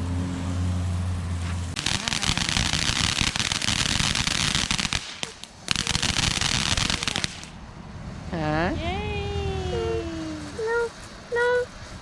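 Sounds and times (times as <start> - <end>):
fireworks crackling: 1.4 - 7.6.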